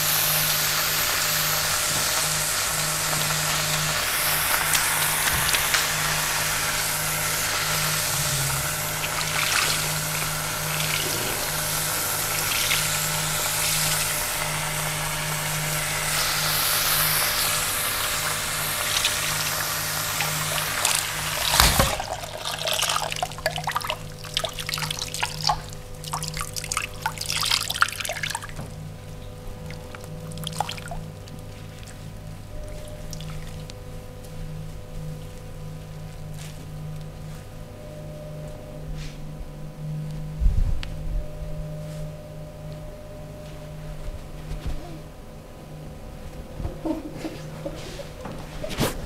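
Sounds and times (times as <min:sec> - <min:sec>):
water running in a stream: 0:00.0 - 0:28.6, 0:29.6 - 0:31.5.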